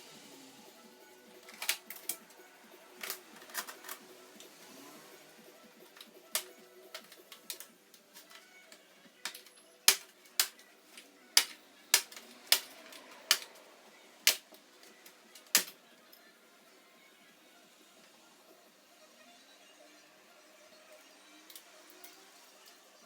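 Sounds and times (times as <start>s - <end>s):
plastic and metal parts clicking: 1.3s - 4.6s, 5.8s - 15.8s.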